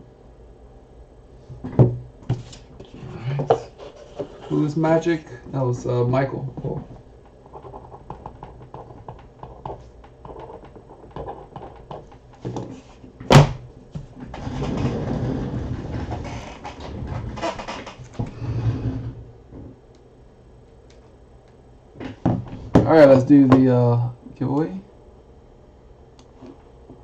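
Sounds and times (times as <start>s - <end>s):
knock on table: 1.6s - 2.0s.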